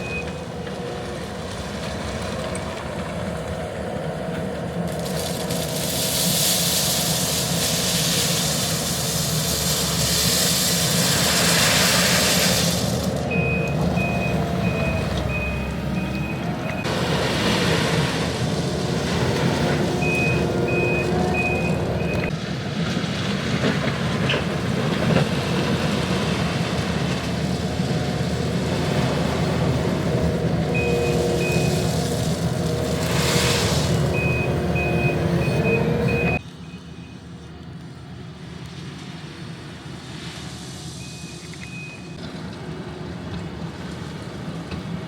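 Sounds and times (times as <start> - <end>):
reversing alarm beeping: 0.0 - 0.4, 13.3 - 16.9, 20.0 - 22.3, 30.7 - 33.4, 34.0 - 37.3, 41.0 - 42.2
mulcher engine running: 0.0 - 38.6
grinding rush of mulching head: 0.6 - 36.4.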